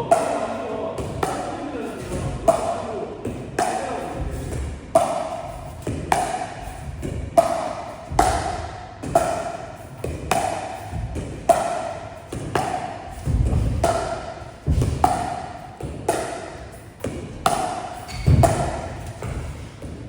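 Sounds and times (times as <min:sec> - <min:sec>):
paddles striking pickleball: 0:00.0 - 0:20.0
soft low thuds: 0:03.2 - 0:20.0.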